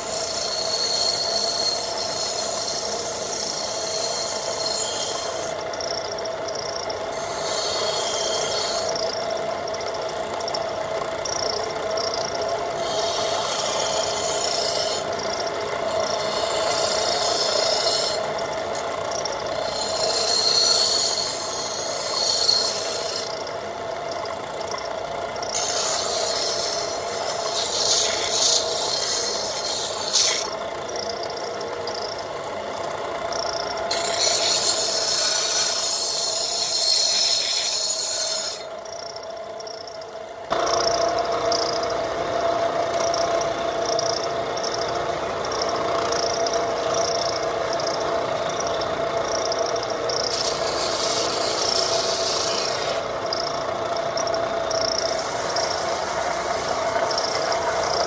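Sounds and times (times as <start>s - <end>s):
wooden handle being sanded: 0.0s - 5.6s, 7.2s - 9.0s, 12.7s - 15.2s, 15.8s - 23.4s, 25.5s - 30.6s, 33.9s - 38.7s, 50.2s - 53.1s, 54.8s - 58.0s.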